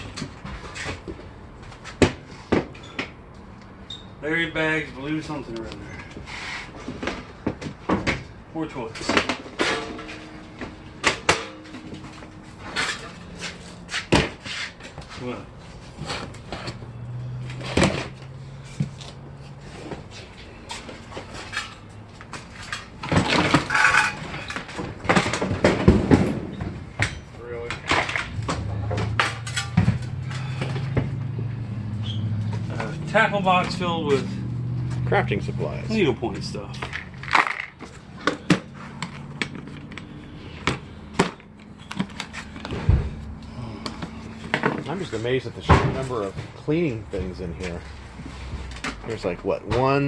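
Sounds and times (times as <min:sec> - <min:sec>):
clattering and rattling: 0:20.7 - 0:31.4, 0:36.8 - 0:40.0.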